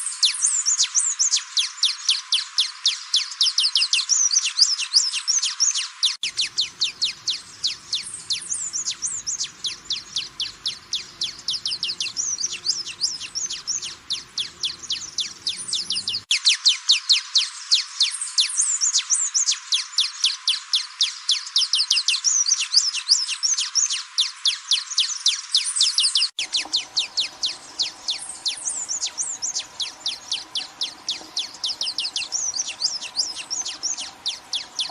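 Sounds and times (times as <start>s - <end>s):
faint low hiss: 6.2s - 16.3s, 26.4s - 34.9s
hummingbird chirping: 6.2s - 16.3s, 26.4s - 34.9s.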